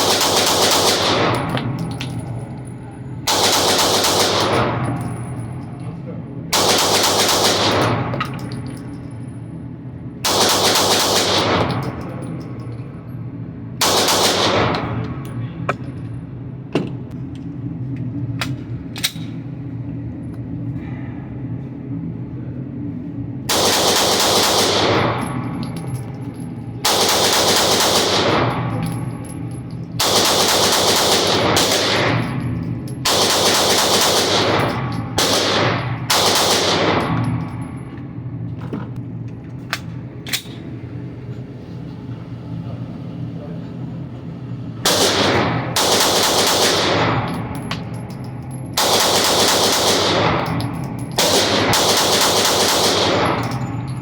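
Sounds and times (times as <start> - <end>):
rapid pistol fire: 0.0 - 1.6, 3.3 - 4.9, 6.5 - 8.1, 10.2 - 12.0, 13.8 - 15.0, 23.5 - 25.4, 26.8 - 28.8, 30.0 - 32.4, 33.0 - 37.2, 44.8 - 47.6, 48.8 - 53.5
pistol shots: 0.0 - 1.7, 3.3 - 4.9, 6.6 - 8.2, 10.3 - 12.0, 13.8 - 15.0, 23.5 - 25.2, 26.9 - 28.8, 30.0 - 32.3, 33.0 - 37.3, 44.9 - 47.3, 48.8 - 50.5, 51.2 - 53.5
steady low hum: 0.0 - 54.0.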